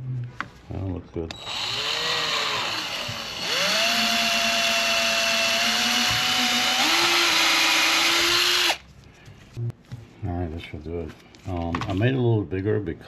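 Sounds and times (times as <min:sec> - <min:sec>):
electric drill boring: 0:01.3 - 0:08.8.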